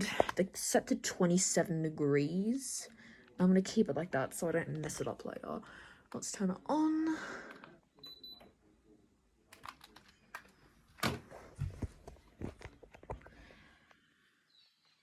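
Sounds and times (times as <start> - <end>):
air conditioner high beep: 8.0 - 8.5.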